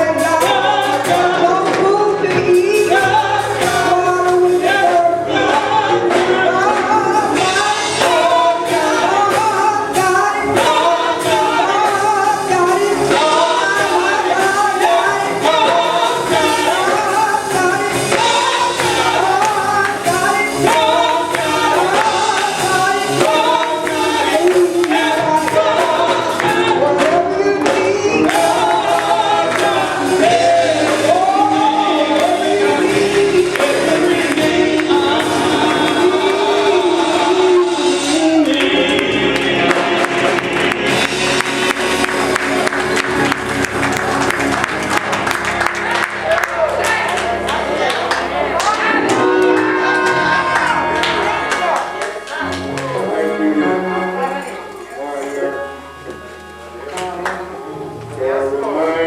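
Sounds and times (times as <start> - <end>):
gospel choir singing with band: 0.0 - 59.0.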